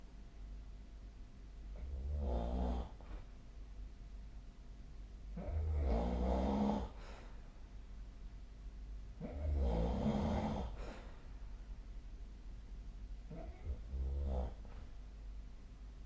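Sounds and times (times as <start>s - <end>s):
person snoring: 5.4s - 7.0s, 9.2s - 11.0s, 13.3s - 14.6s.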